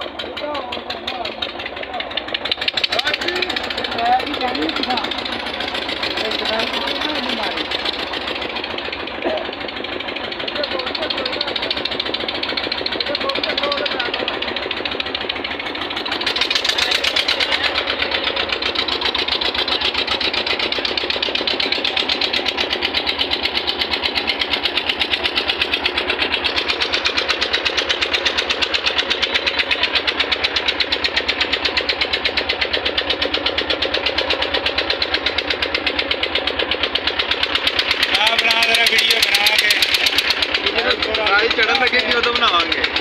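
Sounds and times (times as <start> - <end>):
combine harvester running: 0.0 - 43.0.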